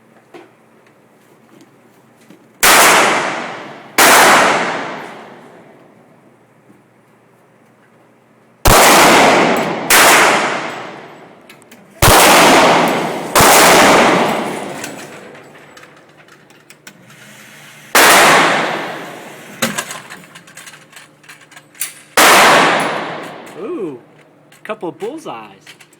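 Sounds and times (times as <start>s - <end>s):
gunshots echoing: 2.6s - 5.5s, 8.7s - 11.3s, 12.0s - 15.3s, 18.0s - 19.2s, 22.2s - 23.5s.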